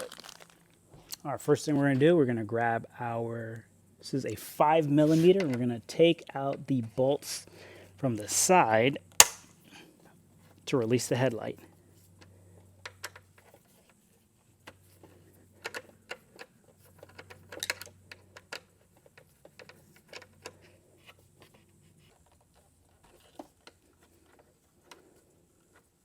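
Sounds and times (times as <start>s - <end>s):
hand tool clicks and taps: 9.2s - 9.4s.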